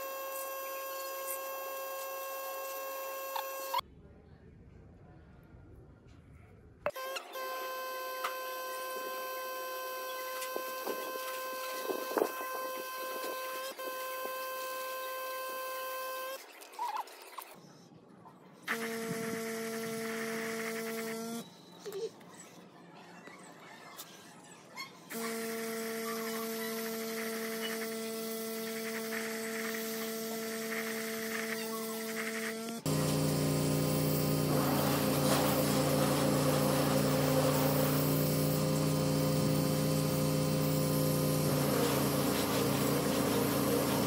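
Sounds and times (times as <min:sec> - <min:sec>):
electric motor whine: 0:00.0 - 0:03.8, 0:06.9 - 0:16.4, 0:18.7 - 0:21.4, 0:25.1 - 0:44.0.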